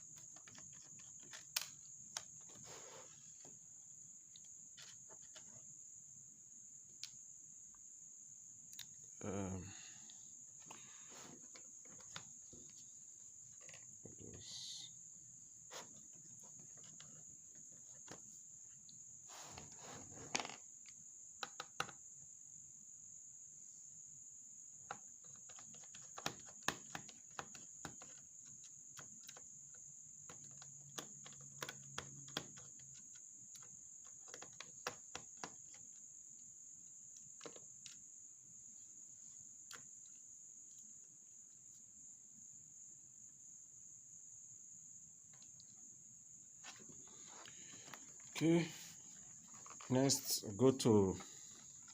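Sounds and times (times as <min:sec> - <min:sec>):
plastic laptop parts clicking: 0:00.1 - 0:02.6, 0:11.4 - 0:12.6, 0:20.3 - 0:22.0, 0:24.9 - 0:36.0, 0:37.2 - 0:38.0, 0:49.2 - 0:50.0, 0:51.6 - 0:51.9
screwdriver being handled: 0:49.2 - 0:49.9.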